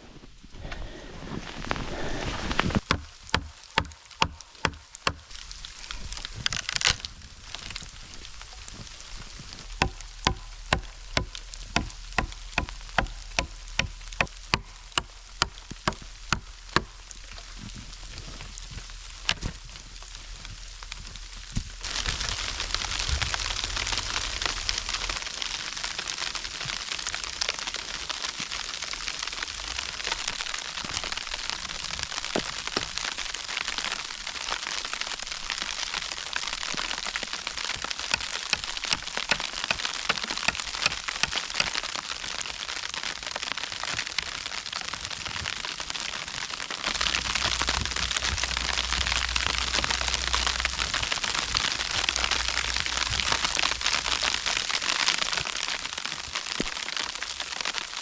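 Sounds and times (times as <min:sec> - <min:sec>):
snow pattering on a surface: 0:00.0 - 0:58.0
low rumble: 0:05.3 - 0:26.8, 0:46.8 - 0:56.0.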